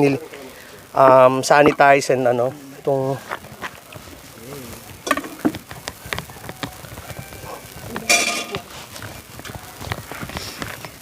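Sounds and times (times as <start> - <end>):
irregular knocking and clicking: 5.0 - 7.1.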